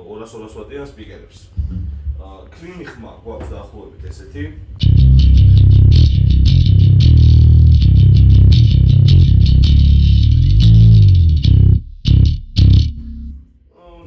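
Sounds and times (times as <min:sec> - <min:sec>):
electric bass guitar: 0:04.8 - 0:13.5.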